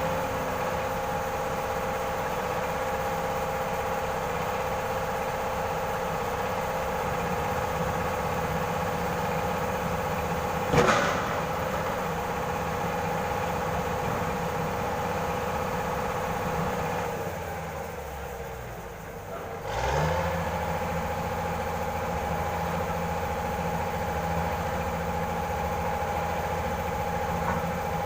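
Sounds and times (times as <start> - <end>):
heavy equipment engine idling: 0.0 - 28.0
sharp knock: 10.7 - 11.4.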